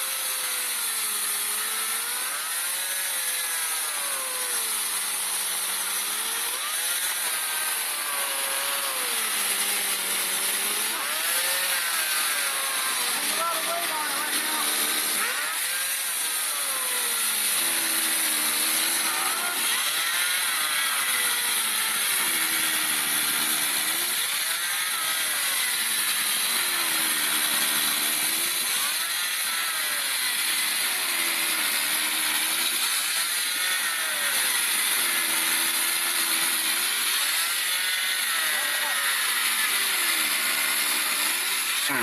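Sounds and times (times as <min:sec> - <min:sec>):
air-powered chainsaw cutting wood: 0:00.0 - 0:42.0.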